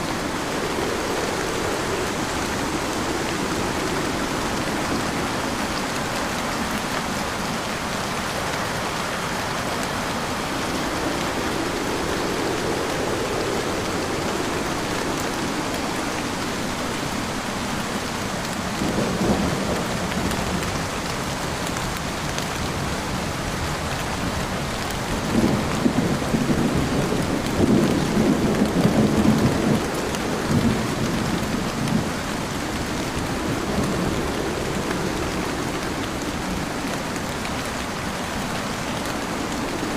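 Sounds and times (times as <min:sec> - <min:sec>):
rolling thunder: 0:00.0 - 0:06.7, 0:25.1 - 0:39.9
heavy rain pouring: 0:00.0 - 0:39.9.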